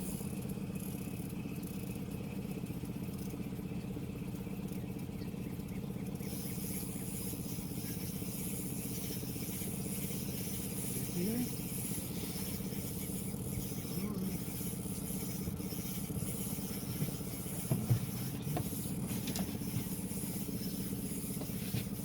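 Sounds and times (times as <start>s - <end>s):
mechanical drone: 4.7s - 22.0s.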